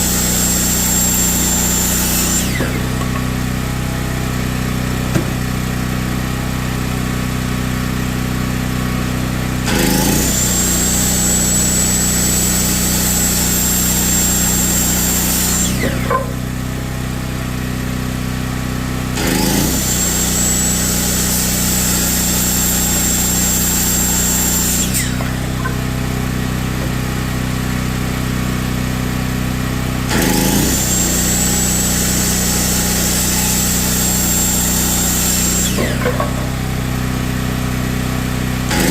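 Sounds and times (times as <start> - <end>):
circular saw cutting wood: 0.0 - 7.8, 8.7 - 38.9.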